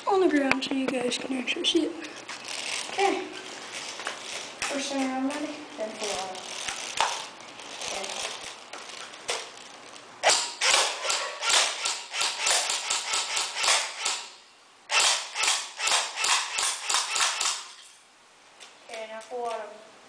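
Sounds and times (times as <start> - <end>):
airsoft gun single shots: 10.2 - 17.8.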